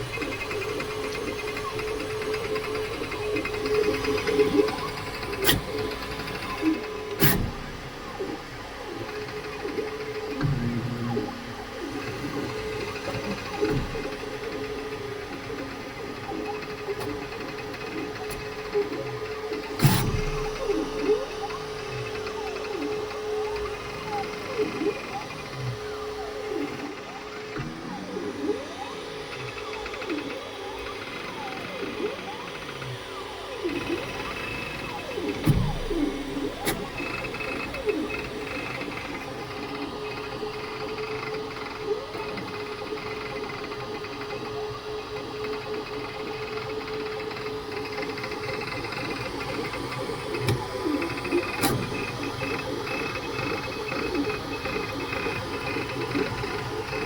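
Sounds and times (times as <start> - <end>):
steady hum: 0.0 - 17.6, 34.8 - 42.2
stepper motors whining: 0.0 - 25.3, 27.5 - 57.0.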